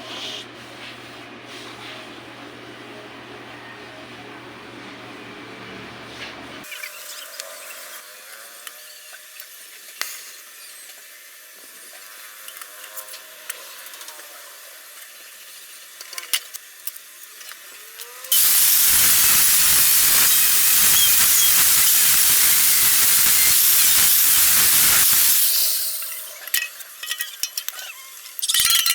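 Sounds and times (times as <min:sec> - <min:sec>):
gas torch hissing: 0:18.3 - 0:26.5.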